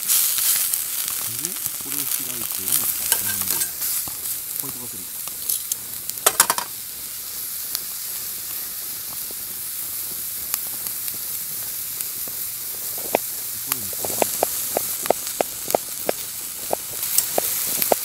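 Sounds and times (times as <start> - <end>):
food sizzling in oil: 0.0 - 18.0
utensil clattering against pan: 3.0 - 3.9, 6.3 - 6.7
small pops: 8.5 - 18.0.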